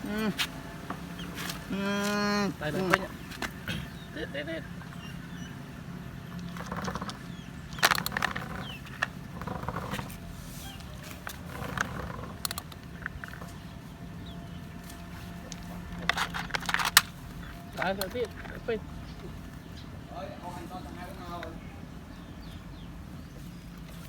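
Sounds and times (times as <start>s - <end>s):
steady low hum: 0.0s - 24.0s
plastic toys clicking and knocking: 6.3s - 10.2s, 11.2s - 13.7s, 15.5s - 18.9s.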